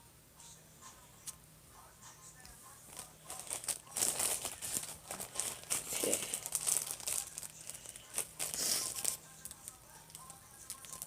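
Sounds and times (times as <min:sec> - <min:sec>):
crinkling and crackling: 0:02.9 - 0:11.0.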